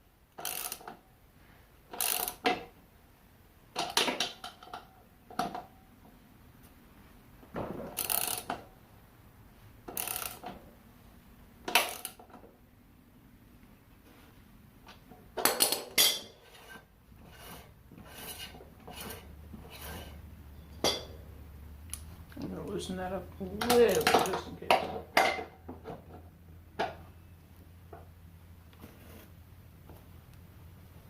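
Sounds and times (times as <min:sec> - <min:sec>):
wrench metallic strokes: 0:02.0 - 0:02.4, 0:09.9 - 0:10.4, 0:16.4 - 0:20.2
hand tools and metal parts clinking: 0:07.9 - 0:08.7, 0:09.8 - 0:10.6, 0:14.9 - 0:21.2, 0:22.3 - 0:26.2.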